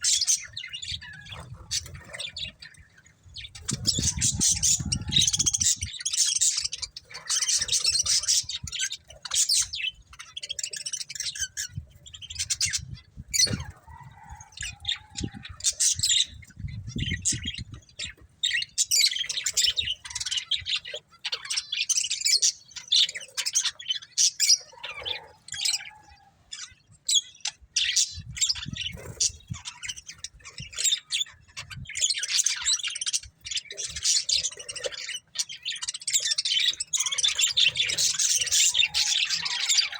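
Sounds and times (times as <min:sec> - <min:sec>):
budgerigars chirping: 0:00.0 - 0:39.9.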